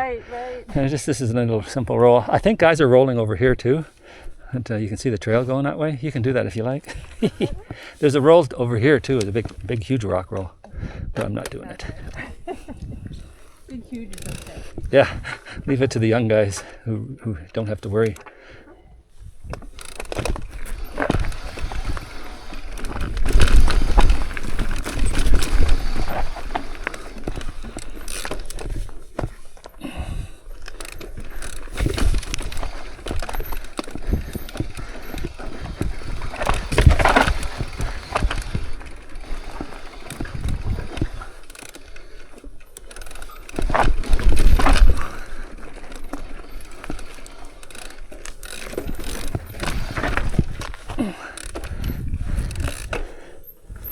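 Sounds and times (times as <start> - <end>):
bike rattling and clicking: 0.0 - 53.9
bike tyres on rock and dirt: 0.0 - 53.9.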